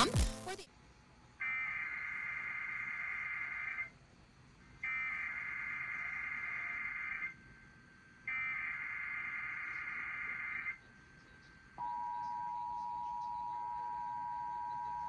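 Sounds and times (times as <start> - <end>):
two-tone attention signal: 11.8 - 15.0.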